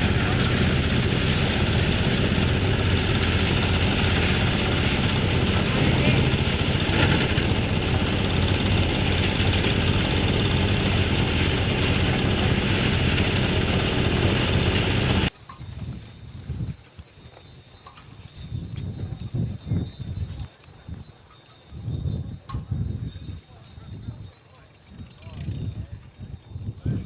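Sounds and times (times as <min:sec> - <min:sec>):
farm machine engine running: 0:00.0 - 0:15.3.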